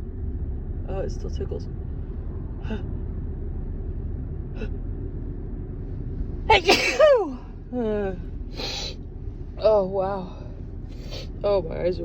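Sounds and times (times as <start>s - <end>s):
car interior rumble: 0.0s - 12.0s
woman sneezing: 6.5s - 7.4s.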